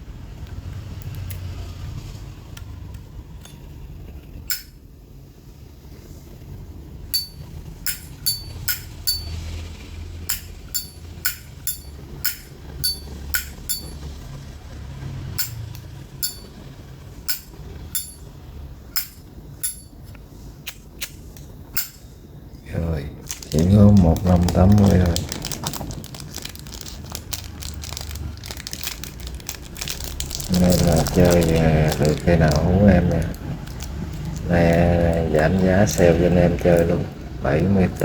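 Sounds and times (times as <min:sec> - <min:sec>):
lighter lid clinking open and shut: 0:04.5 - 0:04.8, 0:19.0 - 0:22.1
steady low rumble: 0:21.6 - 0:38.0.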